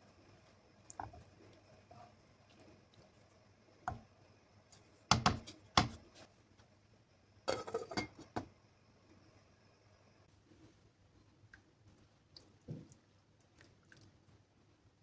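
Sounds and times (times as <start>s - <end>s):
kitchenware knocking and clattering: 5.1s - 6.0s, 7.5s - 8.5s.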